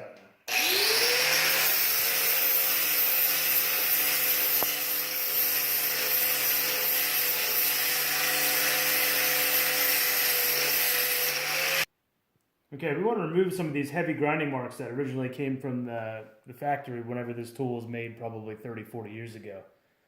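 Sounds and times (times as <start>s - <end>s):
angle grinder grinding metal: 0.5s - 11.9s.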